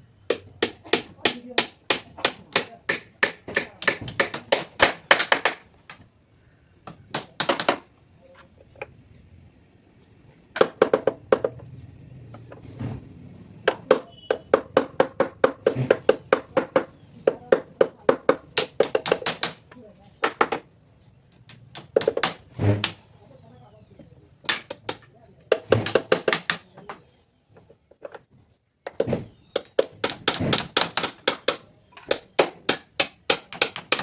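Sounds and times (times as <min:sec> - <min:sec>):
rapid hammer strikes on wood: 0:00.3 - 0:05.6, 0:06.8 - 0:07.8, 0:10.6 - 0:11.6, 0:13.6 - 0:19.6, 0:21.7 - 0:23.0, 0:24.5 - 0:26.6, 0:28.9 - 0:34.0.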